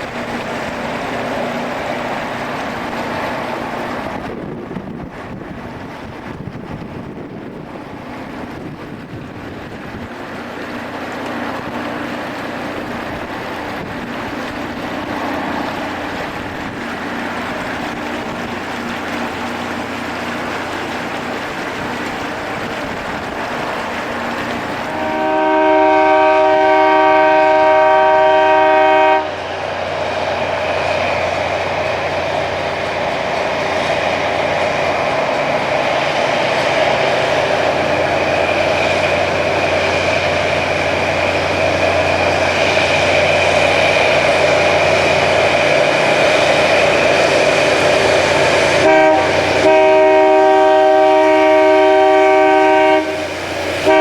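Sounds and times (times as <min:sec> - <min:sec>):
train multi-tone horn: 0:24.8 - 0:29.8, 0:48.2 - 0:54.0.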